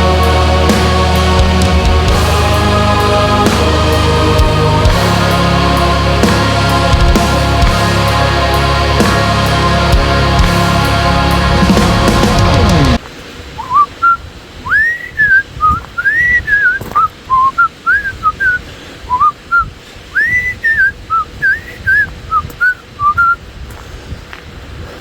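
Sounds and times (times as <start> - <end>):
man whistling a tune: 13.6 - 23.4.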